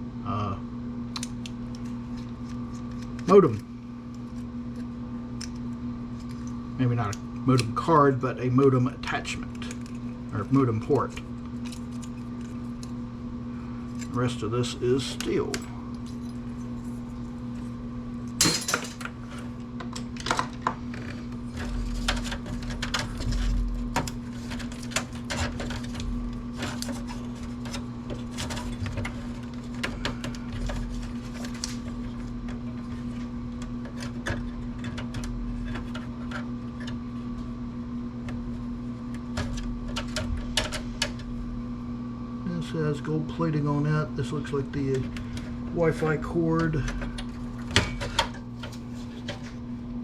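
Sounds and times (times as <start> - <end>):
steady low hum: 0.0 - 50.0
metal parts and tools clinking: 18.4 - 19.1.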